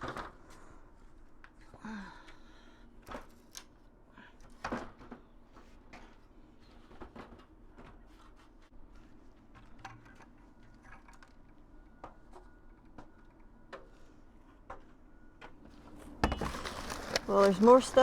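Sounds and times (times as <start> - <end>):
debris clicks and rustles: 15.8 - 18.0.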